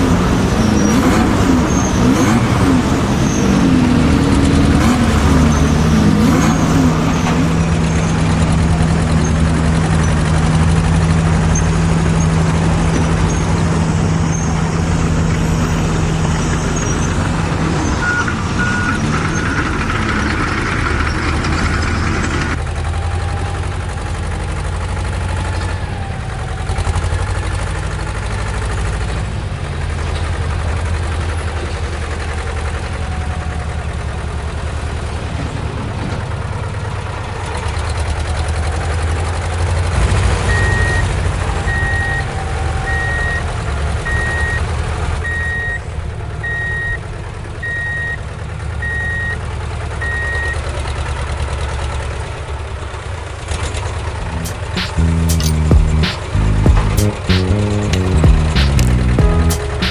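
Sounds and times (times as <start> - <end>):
reversing beeper: 0.0 - 22.6, 40.4 - 49.4, 50.0 - 50.6, 59.2 - 59.9
simulated diesel engine running: 0.0 - 59.9.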